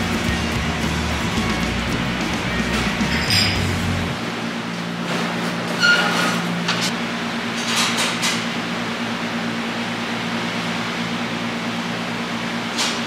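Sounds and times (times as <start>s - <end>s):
low machine hum: 0.0s - 7.7s.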